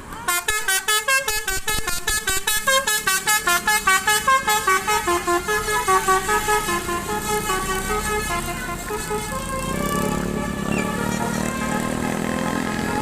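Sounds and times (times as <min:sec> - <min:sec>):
multi-tone bus air horn tune: 0:00.0 - 0:13.0.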